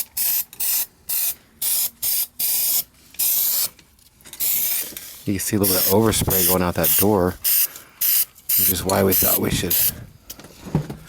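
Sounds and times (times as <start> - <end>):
spray paint can hissing: 0.0 - 3.7, 4.4 - 4.9, 5.6 - 9.9.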